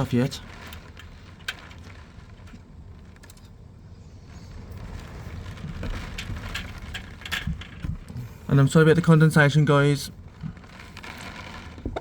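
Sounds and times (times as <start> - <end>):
wind gusting against car: 0.0 - 12.0
light knocks and rattles: 4.7 - 8.5.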